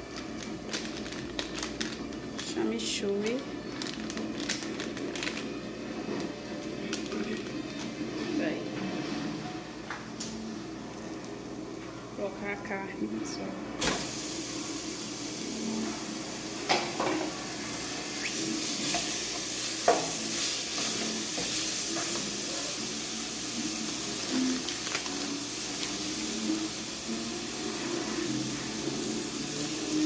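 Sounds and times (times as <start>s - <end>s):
meat sizzling in a pot: 13.8s - 30.0s.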